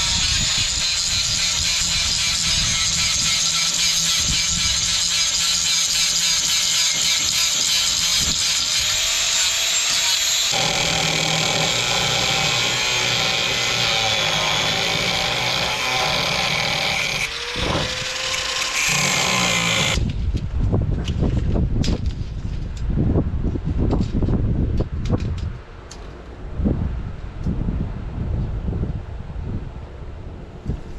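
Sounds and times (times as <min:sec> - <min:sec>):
power tool running: 0:00.0 - 0:20.0.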